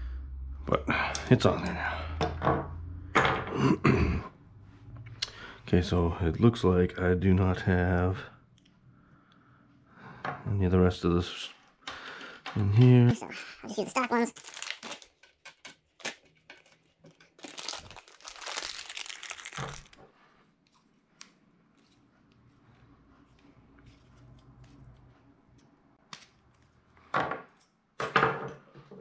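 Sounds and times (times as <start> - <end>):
crinkling and rustling: 12.5 - 25.6.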